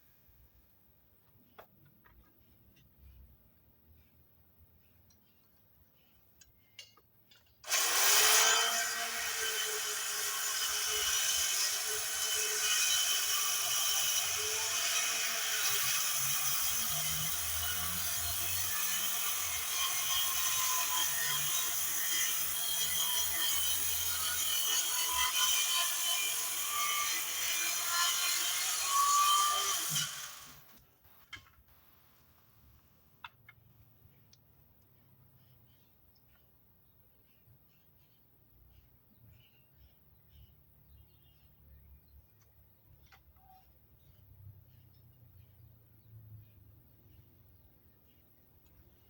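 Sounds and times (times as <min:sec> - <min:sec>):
circular saw cutting timber: 0:07.6 - 0:30.8.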